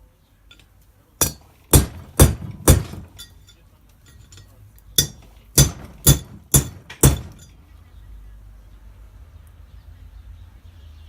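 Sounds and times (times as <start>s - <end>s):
hammer blows on steel: 5.0s - 7.5s.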